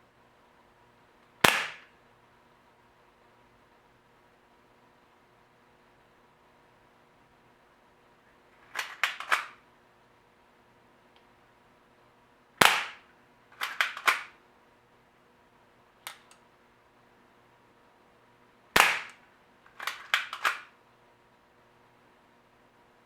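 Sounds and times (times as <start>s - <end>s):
air pistol shot crack: 1.4s - 1.9s, 12.6s - 13.0s, 18.8s - 19.2s
light mechanism clicks: 16.0s - 16.4s, 19.7s - 20.7s.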